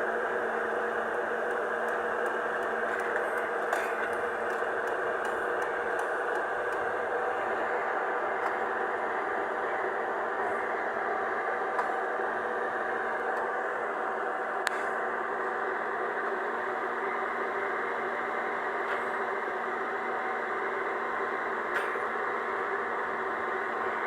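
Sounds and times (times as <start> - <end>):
excavator diesel engine running: 0.0 - 17.8.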